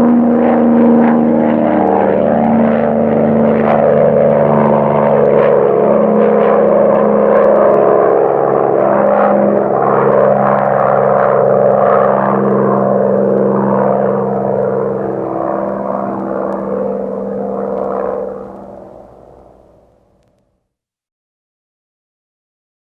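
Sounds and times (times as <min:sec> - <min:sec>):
propeller plane engines droning: 0:00.0 - 0:20.4.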